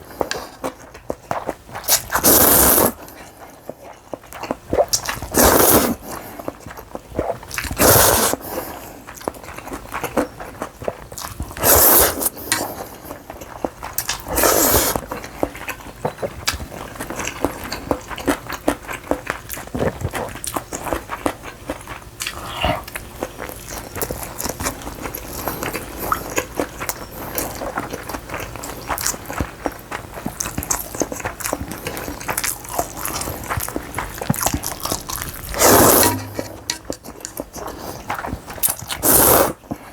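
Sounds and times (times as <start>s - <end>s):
wet chewing with clicks: 0.0s - 39.0s
noodles slurped: 1.8s - 3.1s, 4.8s - 6.2s, 7.2s - 8.8s, 11.3s - 13.0s, 14.0s - 15.1s, 34.1s - 36.9s.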